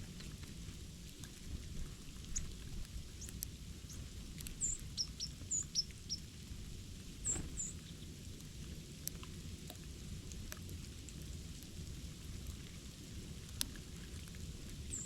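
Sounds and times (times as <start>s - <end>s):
songbirds chirping: 3.9s - 6.2s.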